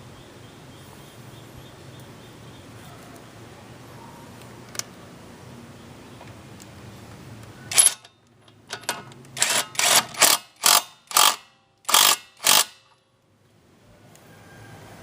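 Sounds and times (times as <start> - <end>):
impact wrench rattling bursts: 7.7 - 8.1, 8.7 - 13.0.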